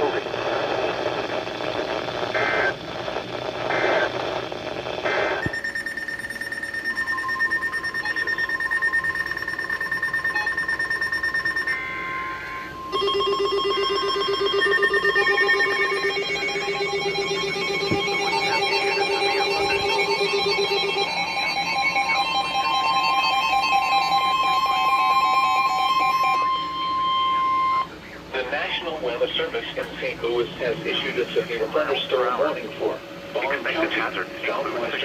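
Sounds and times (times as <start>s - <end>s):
radio hiss: 0.0s - 5.5s, 14.8s - 22.3s, 26.8s - 35.0s
rapidly pulsing ringtone: 5.4s - 27.8s
digital data squawks: 5.4s - 27.9s
electronic beeping tones: 5.4s - 27.9s.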